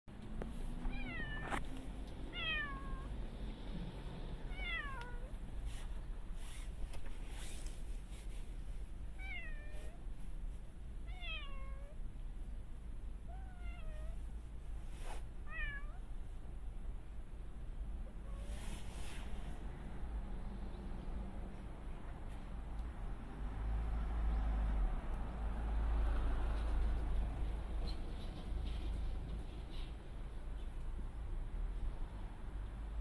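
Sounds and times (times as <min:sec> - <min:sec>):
cat meowing: 0:00.9 - 0:01.6, 0:02.3 - 0:03.2, 0:04.5 - 0:05.4, 0:09.2 - 0:10.0, 0:11.1 - 0:12.0, 0:13.3 - 0:14.2, 0:15.4 - 0:16.1.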